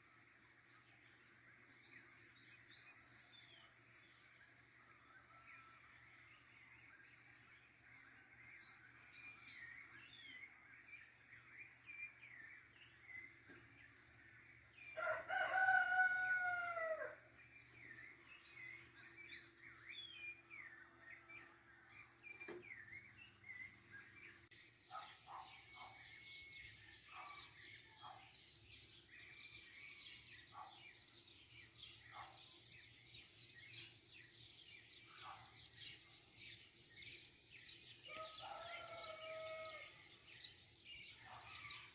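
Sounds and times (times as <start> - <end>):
small birds chirping: 0.0 - 41.9
rooster crowing: 15.0 - 17.2, 38.1 - 40.0.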